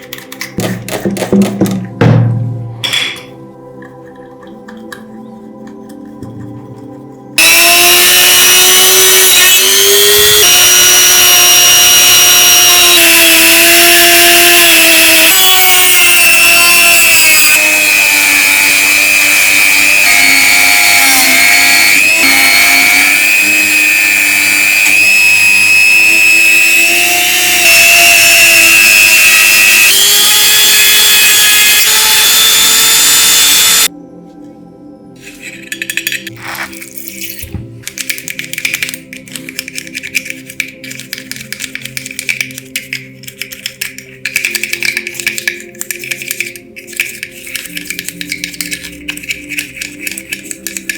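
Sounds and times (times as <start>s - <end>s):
electric power tool whining: 7.4s - 33.9s.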